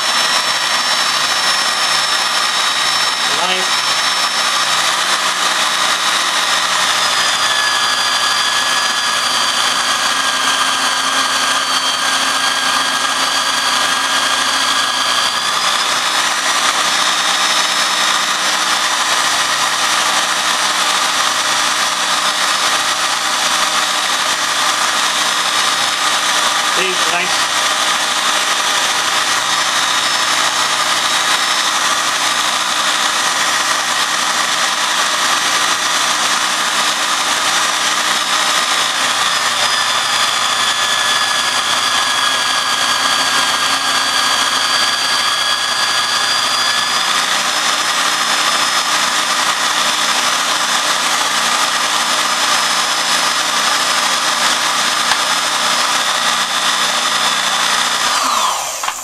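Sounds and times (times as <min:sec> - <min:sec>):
electric drill whining: 0:00.0 - 0:59.0
disc grinding knife edge: 0:54.4 - 0:55.5.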